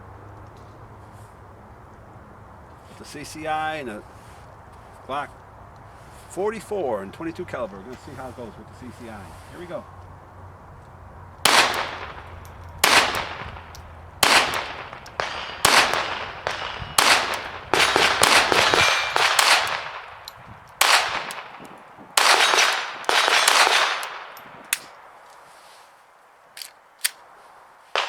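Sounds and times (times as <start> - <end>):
pistol shots: 11.4 - 25.1
faint clicks: 11.7 - 17.7.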